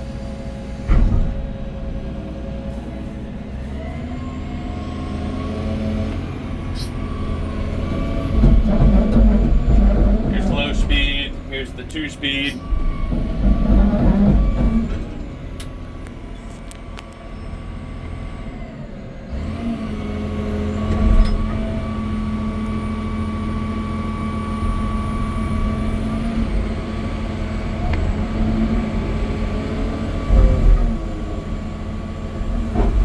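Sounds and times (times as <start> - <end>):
excavator diesel engine running: 0.0 - 33.0
hydraulic whine: 0.0 - 33.0.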